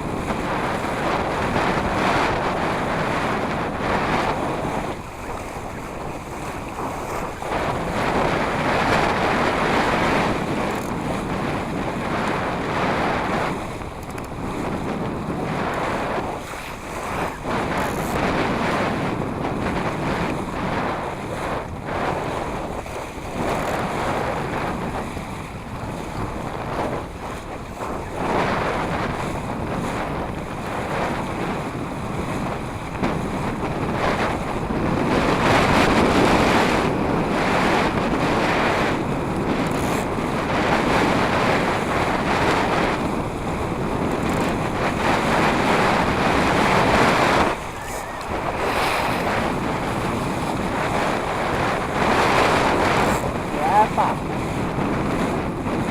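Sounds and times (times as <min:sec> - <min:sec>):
water rushing and splashing: 0:00.0 - 0:55.9
wind buffeting microphone: 0:00.0 - 0:55.9.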